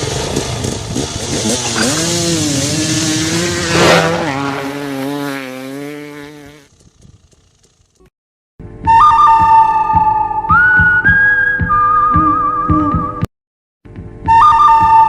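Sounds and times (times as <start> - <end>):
engine revving tone: 0.0 - 8.1.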